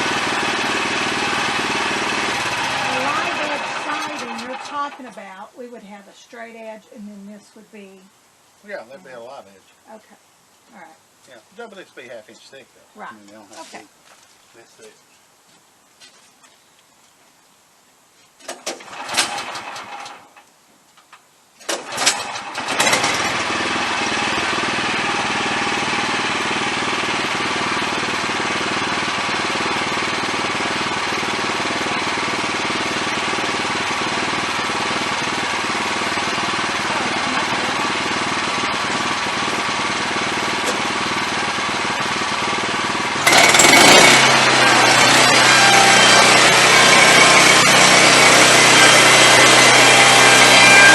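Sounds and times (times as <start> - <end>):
sawmill engine cranking and running: 0.0 - 5.2, 18.7 - 20.3, 21.7 - 50.9.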